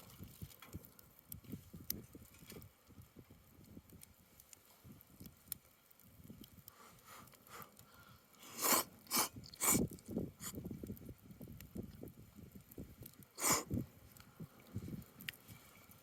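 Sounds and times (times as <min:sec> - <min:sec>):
faint low crackling: 0:00.0 - 0:16.0
person slurping noodles: 0:08.4 - 0:10.6, 0:13.4 - 0:13.8.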